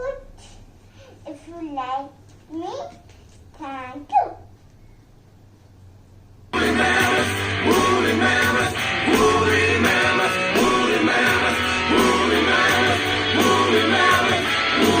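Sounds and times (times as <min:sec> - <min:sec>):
song with steady bass line: 0:06.5 - 0:15.0.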